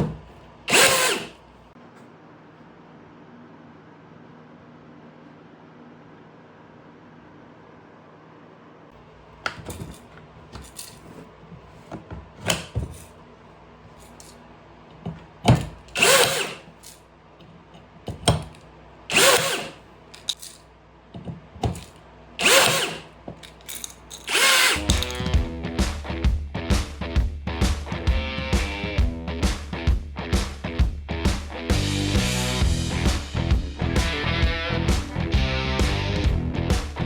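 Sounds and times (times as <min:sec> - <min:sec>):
clicks and handling knocks: 0:00.0 - 0:01.3, 0:09.4 - 0:13.2, 0:13.9 - 0:25.4
rivet gun motor running: 0:00.7 - 0:01.4, 0:12.4 - 0:13.1, 0:15.5 - 0:17.0, 0:18.2 - 0:20.5, 0:21.6 - 0:25.4
music: 0:24.9 - 0:37.0.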